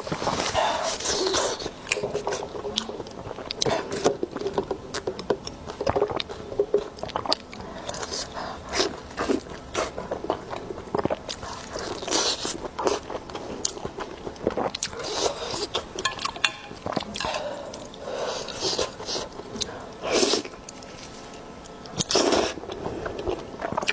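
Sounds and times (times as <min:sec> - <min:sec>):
person chewing and biting food: 0:00.2 - 0:23.9.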